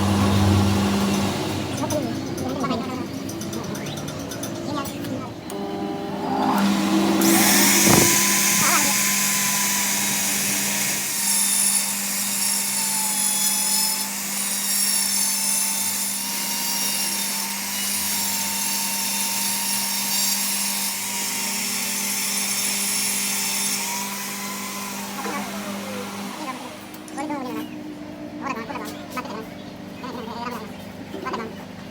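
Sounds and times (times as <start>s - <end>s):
lathe cutting metal: 4.8s - 27.1s.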